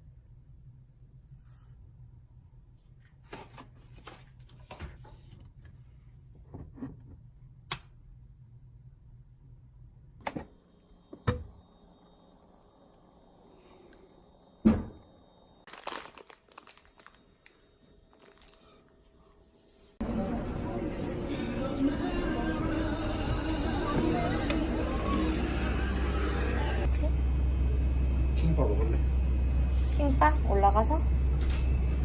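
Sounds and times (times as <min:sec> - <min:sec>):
low hum: 0:16.9 - 0:32.0.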